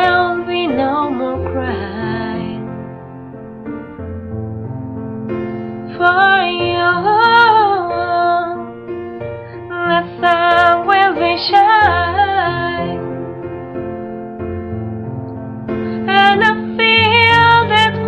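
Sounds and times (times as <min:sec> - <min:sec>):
woman singing a ballad: 0:00.0 - 0:02.8, 0:05.9 - 0:08.7, 0:09.6 - 0:13.1, 0:16.0 - 0:18.0
piano: 0:00.0 - 0:18.0.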